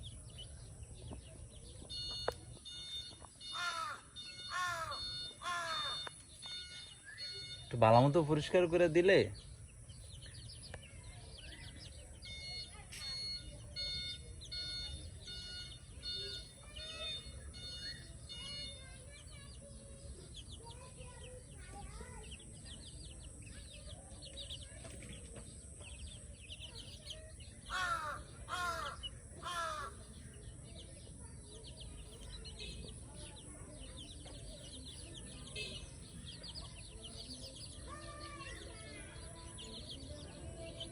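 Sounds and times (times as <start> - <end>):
small birds chirping: 0.0 - 40.9
loud harsh bird calls: 2.7 - 7.8, 26.0 - 31.1.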